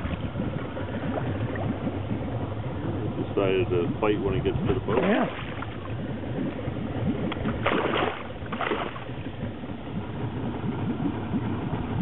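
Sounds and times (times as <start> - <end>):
small boat rumbling: 0.0 - 12.0.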